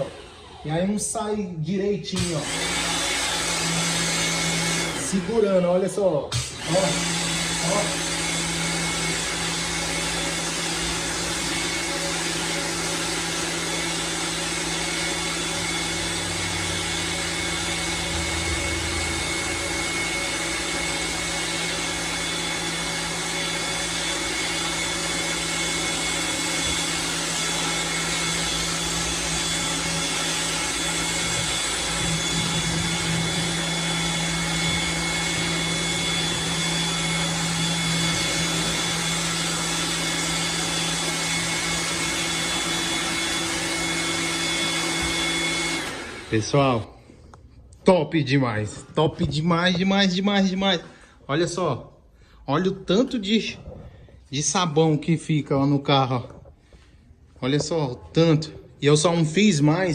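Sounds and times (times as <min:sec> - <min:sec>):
pressure washer motor whine: 0:00.0 - 0:01.6, 0:02.2 - 0:05.6, 0:06.3 - 0:46.8.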